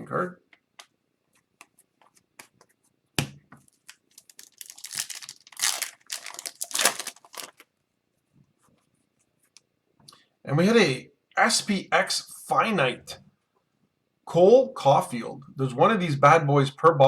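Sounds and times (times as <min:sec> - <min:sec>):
wrapper tearing and crinkling: 0:03.9 - 0:07.7.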